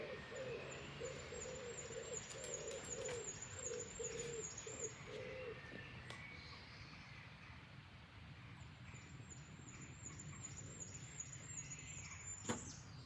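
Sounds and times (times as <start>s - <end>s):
bird cooing: 0.0s - 5.9s.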